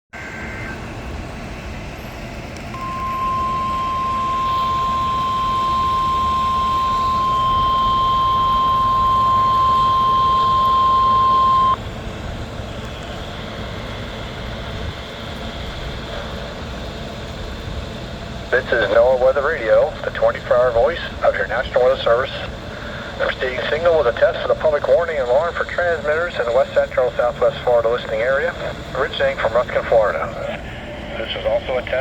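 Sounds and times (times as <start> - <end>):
steady warning alarm beep: 2.7 - 11.8
radio hiss: 2.8 - 11.8, 18.5 - 32.0.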